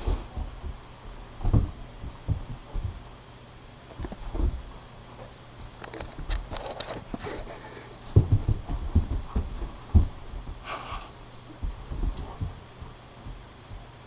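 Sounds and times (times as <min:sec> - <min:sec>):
dog paws thudding: 0:00.0 - 0:14.0
dog claws clicking on floor: 0:05.2 - 0:10.5
dog breath: 0:10.6 - 0:11.2.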